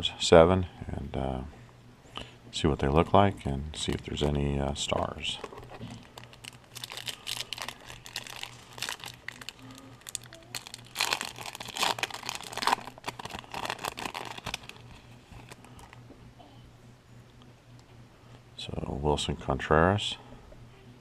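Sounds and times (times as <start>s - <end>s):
card pack wrapper tearing and crinkling: 5.4s - 16.0s.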